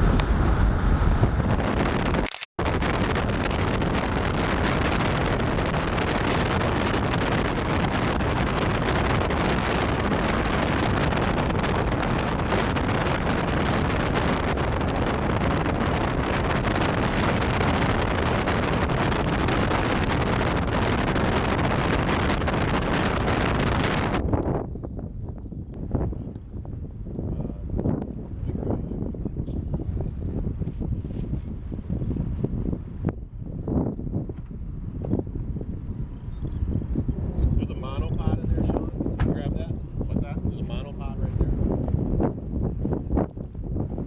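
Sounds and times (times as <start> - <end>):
wind buffeting microphone: 0.0 - 44.0.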